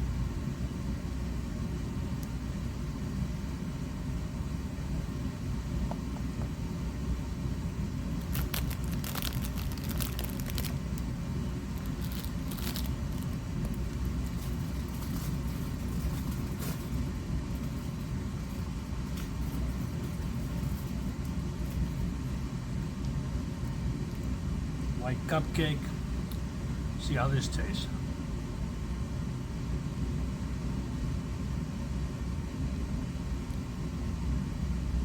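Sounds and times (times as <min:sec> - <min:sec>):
plastic wrapper crinkling: 0:08.2 - 0:11.0, 0:11.7 - 0:16.9.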